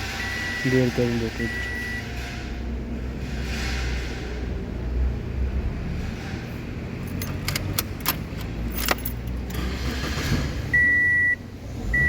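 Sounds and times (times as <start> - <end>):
keys jangling and clicking: 7.0 - 9.6.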